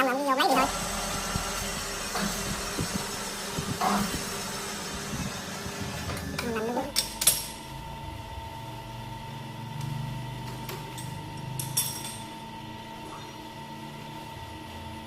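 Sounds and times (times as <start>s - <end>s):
metal lathe whining: 0.5s - 6.6s.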